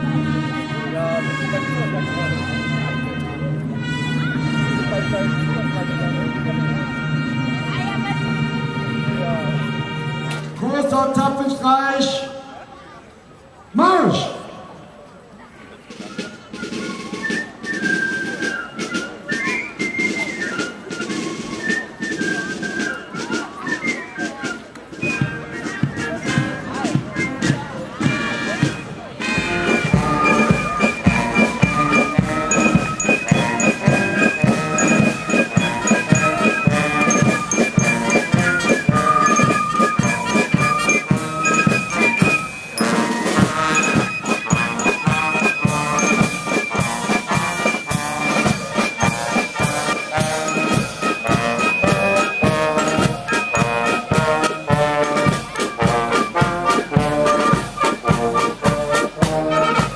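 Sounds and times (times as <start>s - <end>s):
trumpets and trombones: 0.0s - 12.5s, 24.9s - 59.9s
steady drum beat: 25.2s - 59.9s.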